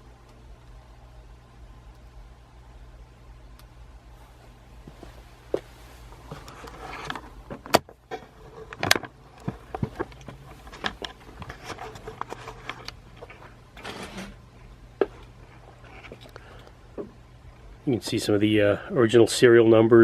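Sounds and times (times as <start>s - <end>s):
low steady hum: 0.0s - 20.0s
rustling: 4.2s - 16.6s
sharp clicks and knocks: 6.3s - 14.0s.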